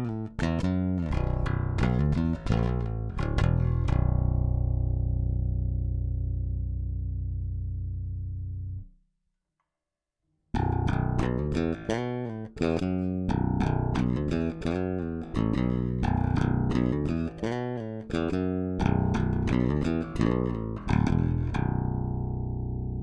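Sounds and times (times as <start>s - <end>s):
electric bass guitar plucked notes: 0.0s - 8.9s, 10.6s - 23.0s.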